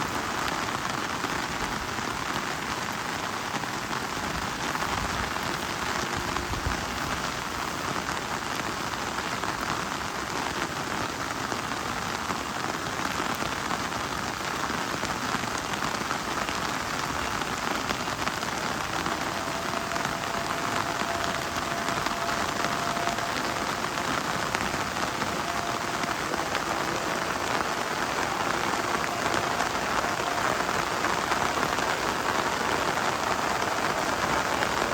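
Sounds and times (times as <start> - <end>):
rain pattering on leaves: 0.0 - 34.9
faint steady tone: 17.0 - 34.9.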